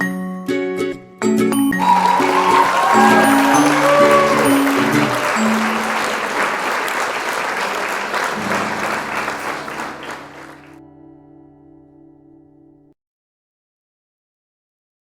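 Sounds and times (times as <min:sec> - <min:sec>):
applause: 0:01.8 - 0:10.8.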